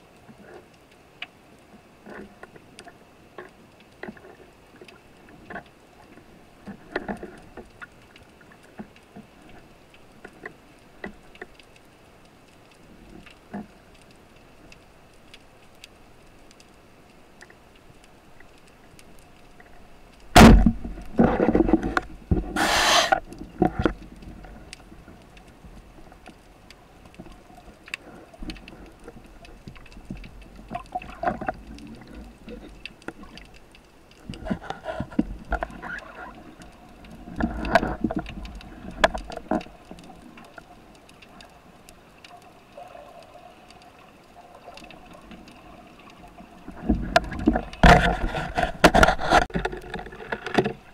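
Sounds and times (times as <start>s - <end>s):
faint crackling clicks underwater: 0.0s - 50.9s
rushing breathy noise: 22.5s - 23.2s.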